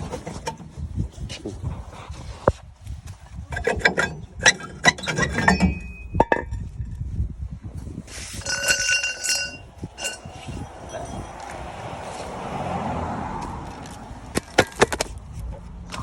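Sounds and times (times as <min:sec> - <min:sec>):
metal tools clinking: 0:03.6 - 0:06.6, 0:08.3 - 0:11.7
ringing metallic clatter: 0:03.6 - 0:07.0, 0:08.3 - 0:11.7.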